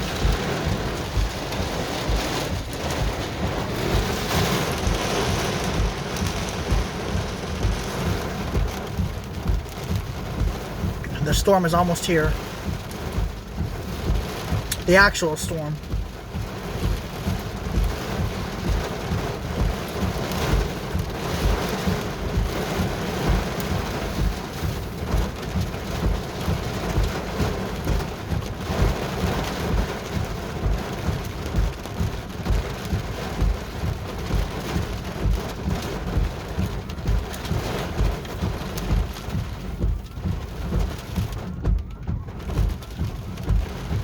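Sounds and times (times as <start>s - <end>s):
low thunder rumble: 0.0s - 11.4s
steady rain: 0.0s - 44.0s.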